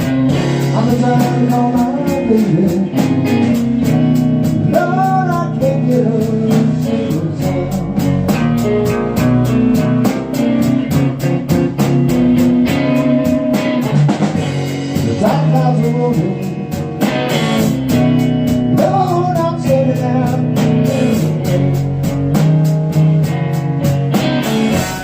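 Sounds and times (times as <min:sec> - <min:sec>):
person singing: 0:00.0 - 0:03.7, 0:04.6 - 0:08.5, 0:15.0 - 0:17.1, 0:18.7 - 0:22.1
drum kit cymbal beat: 0:00.0 - 0:25.0
slow blues guitar: 0:00.0 - 0:25.0.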